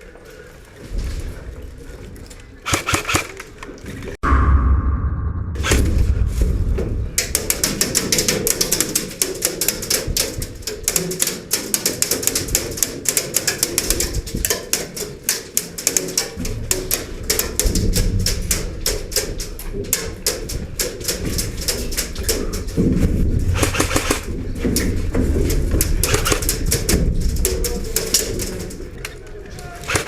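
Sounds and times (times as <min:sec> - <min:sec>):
airsoft guns firing: 0:02.7 - 0:03.5, 0:23.5 - 0:24.3, 0:25.9 - 0:26.9, 0:29.8 - 0:30.0.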